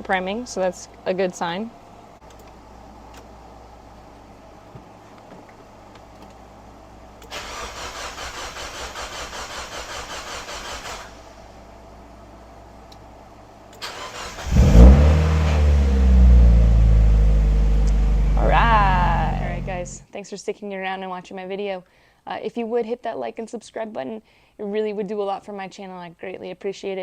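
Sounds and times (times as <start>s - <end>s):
car engine idling: 11.5s - 20.0s.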